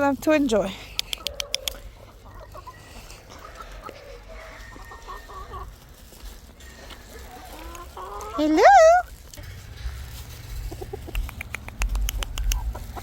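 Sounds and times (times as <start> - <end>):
chickens clucking: 0.5 - 13.0
sharp clicks: 0.9 - 1.9, 11.1 - 12.8.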